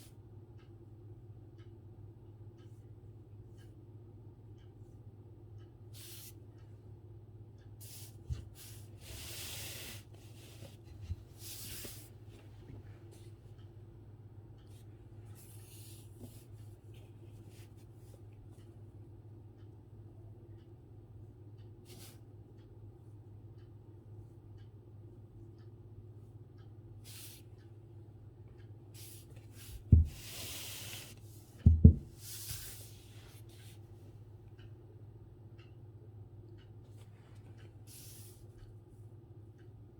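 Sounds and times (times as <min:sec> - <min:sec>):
brush swishing across paper: 0:07.8 - 0:12.1, 0:29.0 - 0:31.4, 0:32.2 - 0:33.8
dull thump: 0:29.8 - 0:30.2, 0:31.6 - 0:32.2
soft knocks: 0:29.8 - 0:30.2, 0:31.6 - 0:32.2.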